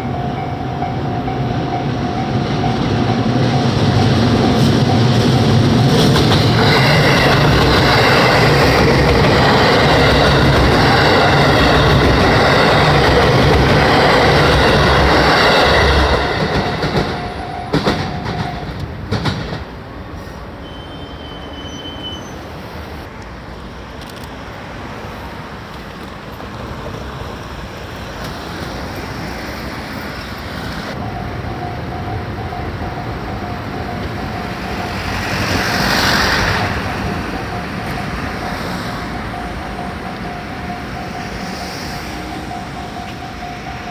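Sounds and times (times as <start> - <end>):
level crossing warning bell: 0.0 - 19.1, 30.9 - 43.9
train passing: 0.0 - 43.9.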